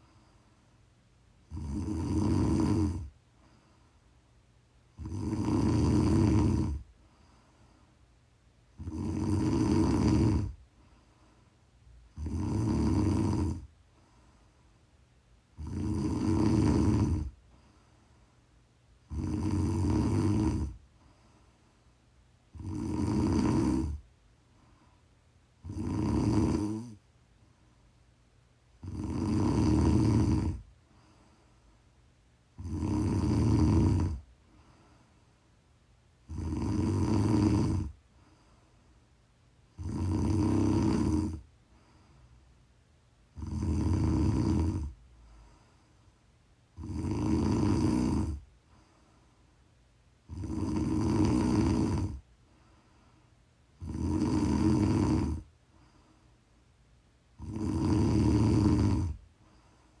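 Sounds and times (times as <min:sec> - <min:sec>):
person snoring: 0:01.4 - 0:03.1, 0:05.0 - 0:06.9, 0:08.7 - 0:10.6, 0:12.1 - 0:13.7, 0:15.6 - 0:17.4, 0:19.0 - 0:20.8, 0:22.5 - 0:24.0, 0:25.6 - 0:27.0, 0:28.8 - 0:30.7, 0:32.6 - 0:34.3, 0:36.2 - 0:38.0, 0:39.8 - 0:41.5, 0:43.3 - 0:45.6, 0:46.8 - 0:48.4, 0:50.2 - 0:52.2, 0:53.8 - 0:55.5, 0:57.4 - 0:59.2.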